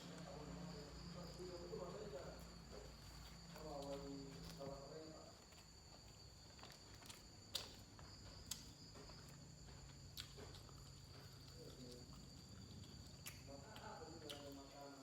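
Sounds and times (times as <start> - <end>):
crickets chirring: 0.0 - 15.0
sharp clicks of eating: 6.6 - 9.2, 9.9 - 15.0.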